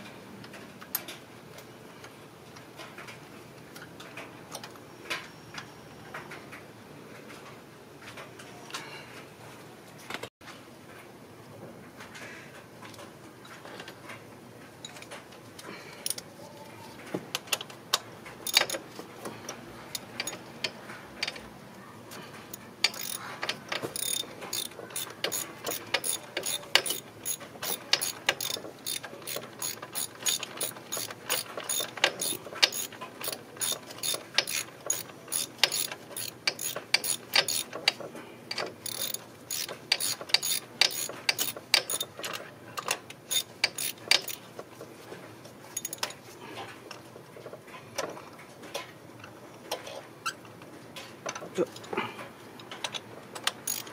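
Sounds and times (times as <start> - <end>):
hand ratchet clicking: 18.4 - 18.8, 19.9 - 21.4, 22.8 - 44.4, 52.8 - 53.9.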